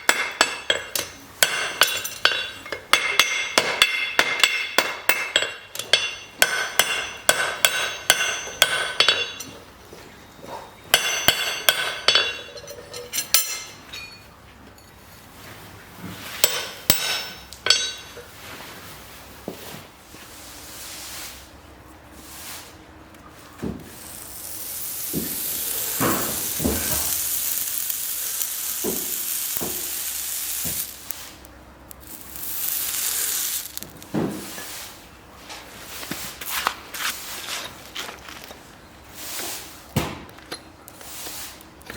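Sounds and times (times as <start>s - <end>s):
steady hissing: 24.0s - 35.0s.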